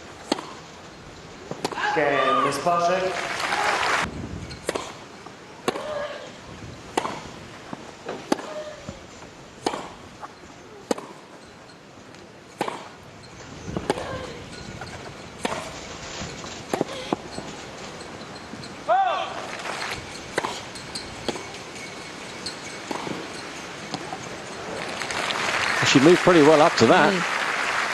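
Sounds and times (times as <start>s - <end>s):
tennis ball hit by rackets: 0.2s - 0.6s, 1.5s - 1.9s, 4.6s - 5.0s, 5.6s - 6.1s, 6.9s - 9.0s, 9.6s - 10.0s, 10.8s - 11.3s, 12.5s - 13.0s, 13.7s - 14.2s, 14.8s - 15.8s, 16.7s - 17.2s, 20.3s - 21.6s, 22.8s - 24.1s.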